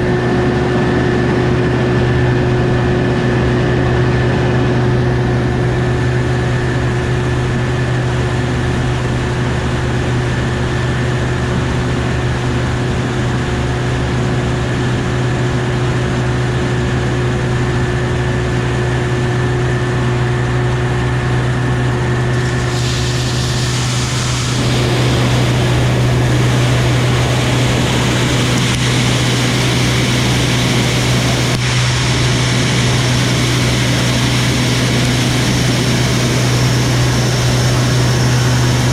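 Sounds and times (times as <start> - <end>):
diesel engine droning: 0.0 - 38.9
loud hissing noise: 21.6 - 38.9.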